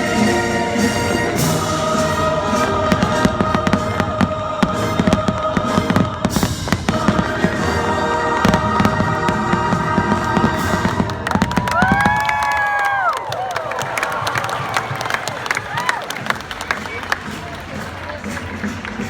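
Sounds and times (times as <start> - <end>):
orchestral music over loudspeakers: 0.0 - 13.2, 13.9 - 19.0
fireworks bursting and crackling: 1.5 - 15.0.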